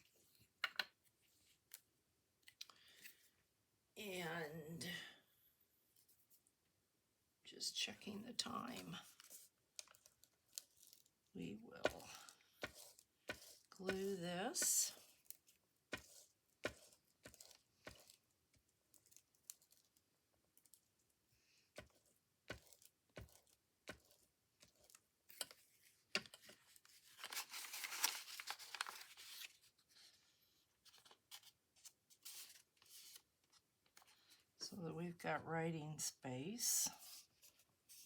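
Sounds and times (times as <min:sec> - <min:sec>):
scratchy rubbing on paper: 0:12.6 - 0:15.1, 0:15.9 - 0:18.1.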